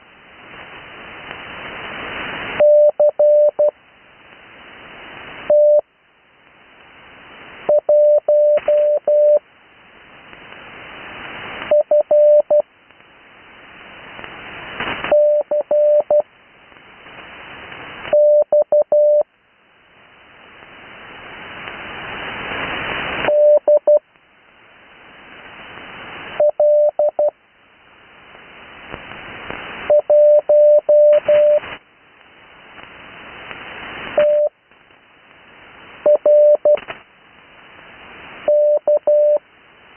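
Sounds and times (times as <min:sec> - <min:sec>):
radio band hiss: 0:00.0 - 0:19.2, 0:19.8 - 0:39.9
morse code tone: 0:02.6 - 0:03.7, 0:07.7 - 0:09.4, 0:11.7 - 0:12.6, 0:15.1 - 0:16.2, 0:18.2 - 0:19.2, 0:23.3 - 0:24.0, 0:29.9 - 0:31.7, 0:34.2 - 0:34.5, 0:36.1 - 0:36.8, 0:38.5 - 0:39.4.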